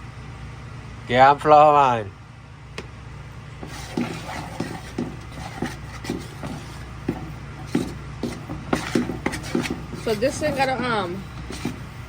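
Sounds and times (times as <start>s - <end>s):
steady low hum: 2.1s - 12.0s
soft knocks of dough work: 3.6s - 12.0s.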